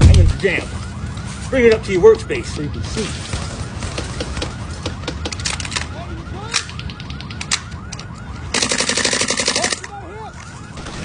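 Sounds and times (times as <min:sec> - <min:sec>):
sharp clicks: 0:06.5 - 0:09.9.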